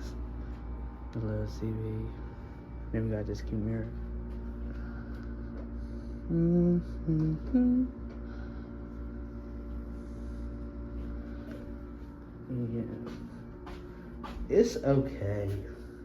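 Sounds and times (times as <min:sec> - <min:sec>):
steady low hum: 0:00.0 - 0:16.0
person humming notes: 0:06.2 - 0:08.2.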